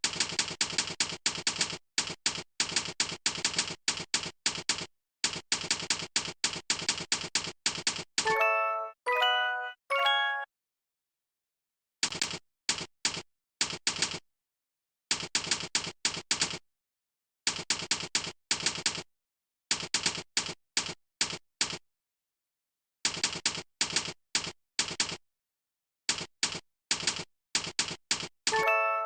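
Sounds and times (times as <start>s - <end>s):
computer keyboard typing: 0.0s - 8.1s.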